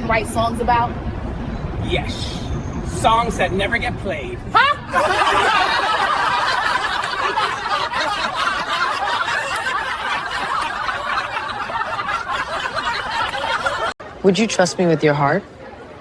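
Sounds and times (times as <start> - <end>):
group of people laughing: 4.6 - 14.0.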